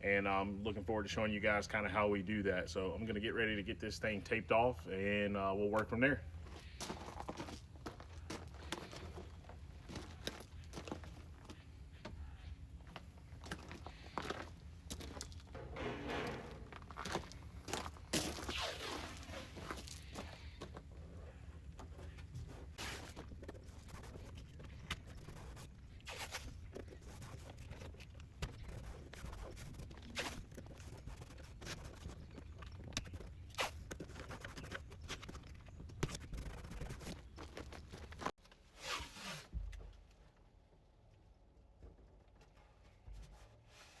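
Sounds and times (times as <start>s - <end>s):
steady low hum: 11.6s - 18.1s
handling noise: 14.9s - 18.7s
tape ripping off roll: 18.1s - 19.9s.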